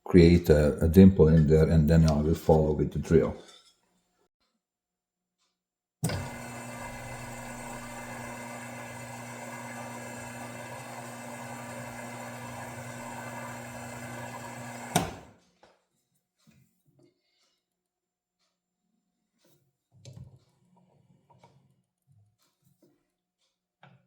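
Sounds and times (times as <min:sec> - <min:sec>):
milling machine motor humming: 0:06.0 - 0:15.3.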